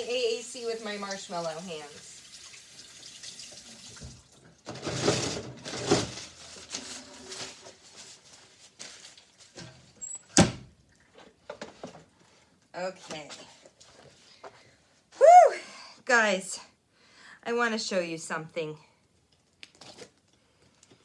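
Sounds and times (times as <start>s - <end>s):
faucet running water: 0.0s - 4.5s.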